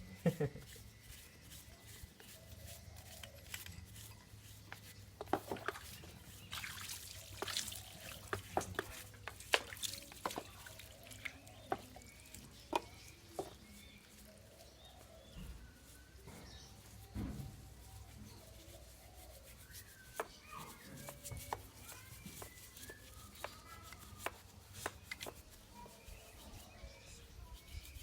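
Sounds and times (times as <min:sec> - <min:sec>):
liquid dripping and splashing: 0:05.2 - 0:12.4.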